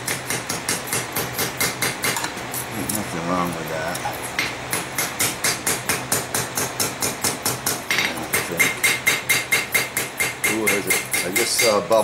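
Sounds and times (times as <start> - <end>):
hammer striking blade on anvil: 4.3 - 12.0.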